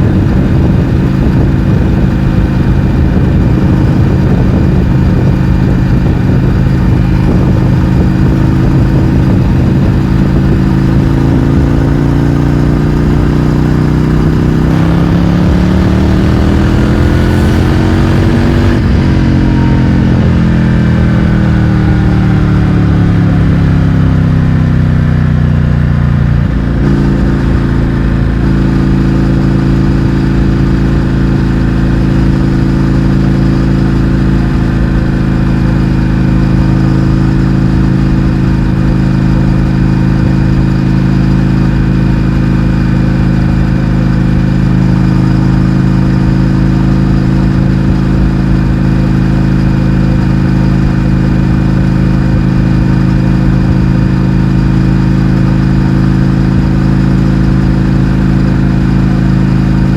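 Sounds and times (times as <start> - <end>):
loud motorcycle engine running: 0.0 - 59.9.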